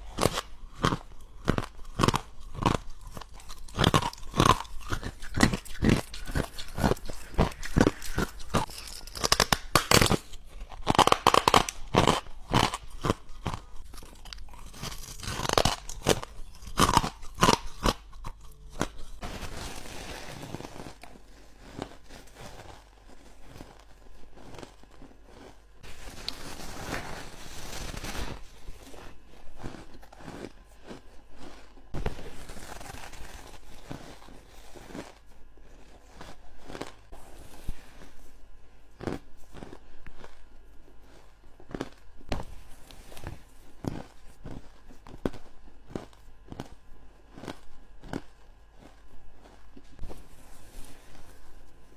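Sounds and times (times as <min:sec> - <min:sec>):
teeth crunching ice: 0:00.0 - 0:19.2
chewing crushed ice: 0:00.0 - 0:51.9.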